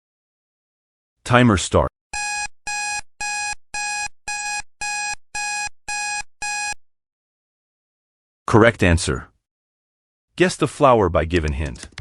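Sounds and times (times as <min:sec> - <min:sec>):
short electronic beeps: 0:02.2 - 0:06.8.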